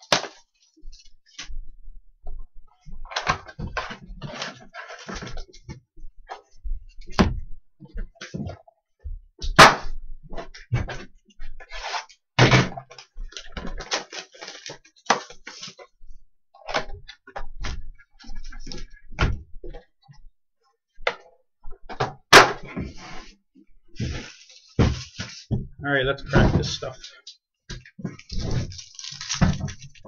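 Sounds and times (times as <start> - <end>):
cardboard knocks and thunks: 6.7 - 9.9, 24.8 - 26.8, 27.7 - 30.0
packaging rustling: 13.3 - 15.8, 24.0 - 25.5, 28.1 - 30.0.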